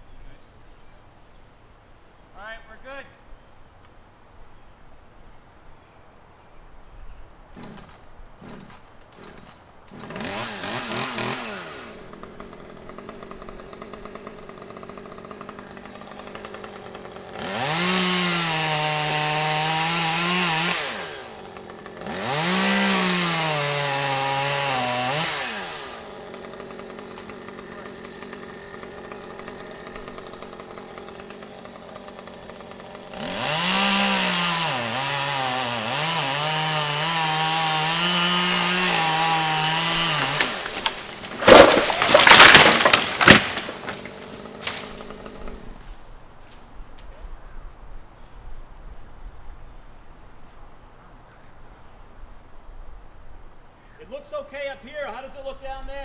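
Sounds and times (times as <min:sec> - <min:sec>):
chainsaw cutting wood: 0:07.5 - 0:46.6
chainsaw idling: 0:07.6 - 0:46.1.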